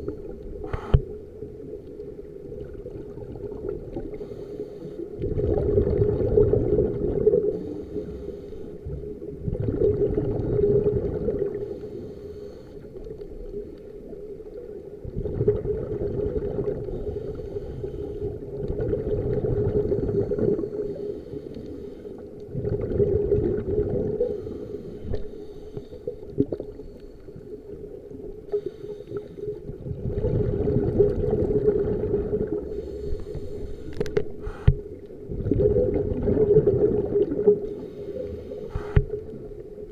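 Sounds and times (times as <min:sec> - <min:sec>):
diver breathing through regulator: 0:04.1 - 0:05.1, 0:07.5 - 0:08.8, 0:11.5 - 0:13.0, 0:16.9 - 0:18.4, 0:19.8 - 0:22.3, 0:24.2 - 0:27.5, 0:28.5 - 0:29.6, 0:32.5 - 0:35.0, 0:37.6 - 0:39.2.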